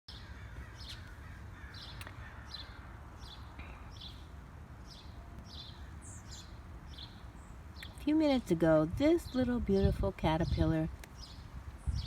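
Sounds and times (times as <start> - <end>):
bird chirping: 0.1 - 8.5, 11.1 - 12.0.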